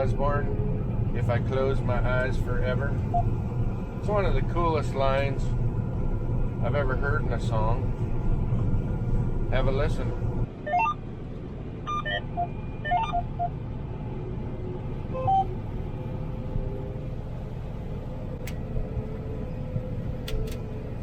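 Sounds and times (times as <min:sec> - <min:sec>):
engine rumble inside cab: 0:00.0 - 0:21.0
short electronic beeps: 0:10.7 - 0:11.0, 0:11.9 - 0:13.6, 0:15.2 - 0:15.5.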